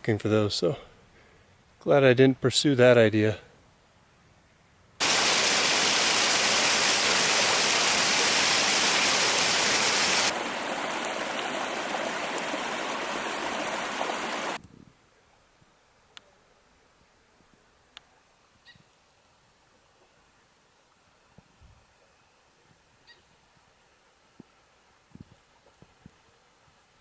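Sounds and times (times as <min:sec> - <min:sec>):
stream water rushing: 0:05.0 - 0:14.6.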